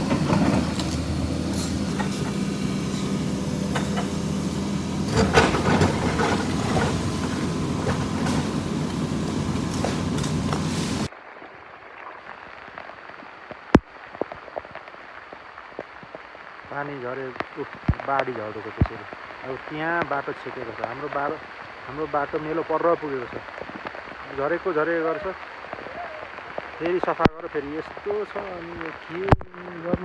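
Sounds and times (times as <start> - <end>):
knocks and clatter: 0.0 - 2.4, 5.0 - 10.8
excavator diesel engine running: 0.0 - 11.1.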